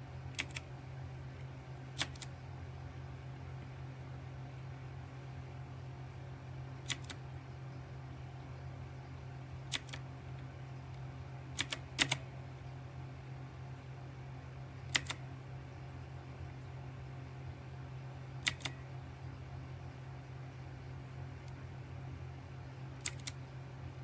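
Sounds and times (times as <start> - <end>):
steady low hum: 0.0 - 24.0
mechanical keyboard key clicks: 0.4 - 0.6, 2.0 - 2.3, 6.9 - 7.2, 9.7 - 10.0, 11.6 - 12.2, 14.9 - 15.2, 18.4 - 18.8, 23.0 - 23.4.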